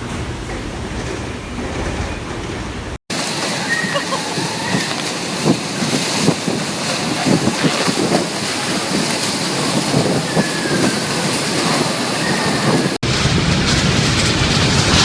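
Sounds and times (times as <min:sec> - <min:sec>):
wind blowing across microphone: 0:00.0 - 0:15.0
water splashing: 0:03.1 - 0:15.0.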